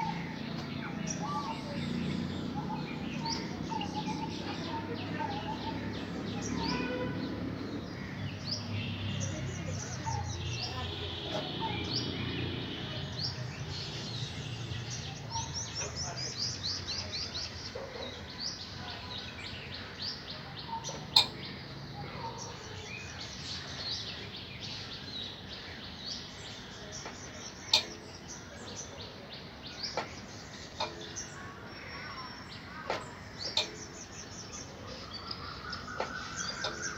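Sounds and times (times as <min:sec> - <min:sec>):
birds chirping: 0:00.0 - 0:36.9.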